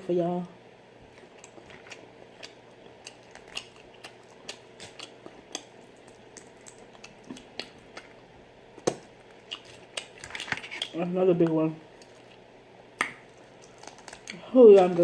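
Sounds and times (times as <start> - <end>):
chewing and lip smacking: 1.1 - 8.2, 8.8 - 11.0, 11.9 - 15.0
shells being peeled: 1.1 - 8.2, 8.8 - 11.0, 13.0 - 15.0.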